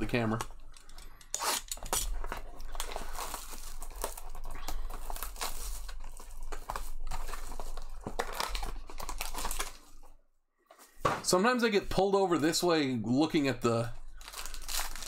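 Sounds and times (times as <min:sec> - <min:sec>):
card pack wrappers crinkling: 0:00.0 - 0:10.1, 0:13.4 - 0:15.0.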